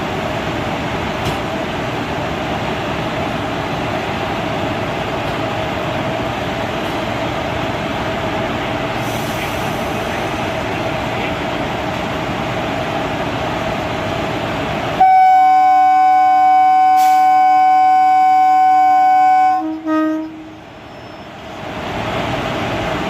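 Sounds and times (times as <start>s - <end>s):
locomotive running hum: 0.0s - 23.0s
locomotive horn blast: 15.0s - 20.6s.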